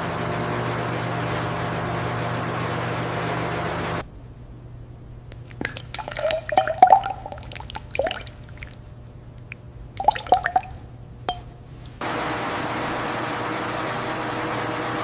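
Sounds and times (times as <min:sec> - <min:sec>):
faint low hum: 0:04.0 - 0:12.0
liquid dripping and splashing: 0:05.3 - 0:11.6.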